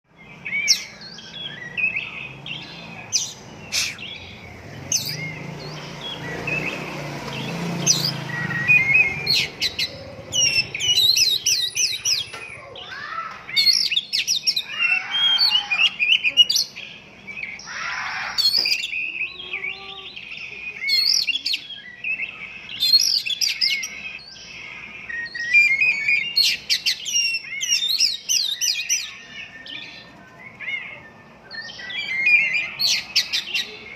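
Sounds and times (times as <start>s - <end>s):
bird singing varied song: 0.1s - 33.9s.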